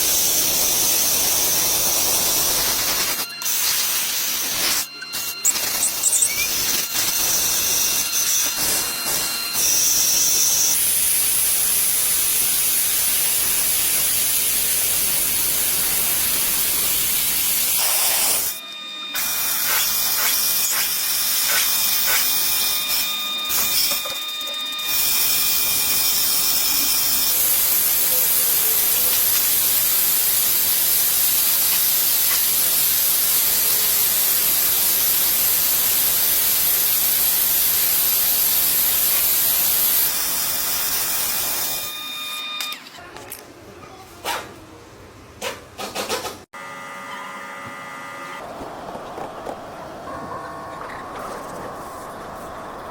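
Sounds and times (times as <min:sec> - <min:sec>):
loud hissing noise: 0:00.0 - 0:18.6, 0:25.0 - 0:41.9.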